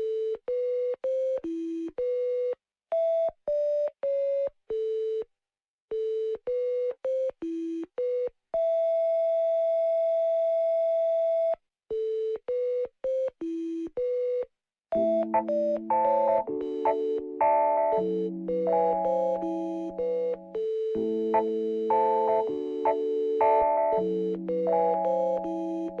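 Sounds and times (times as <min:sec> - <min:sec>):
electronic beeps playing a tune: 0:15.0 - 0:26.0.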